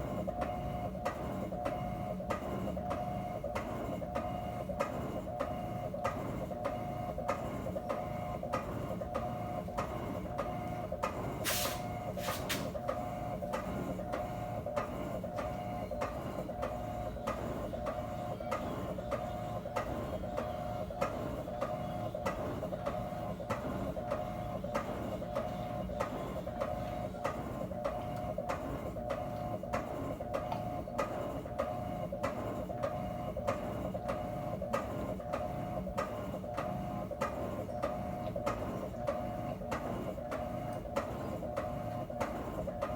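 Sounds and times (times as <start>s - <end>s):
washing machine motor hum: 0.0s - 42.9s.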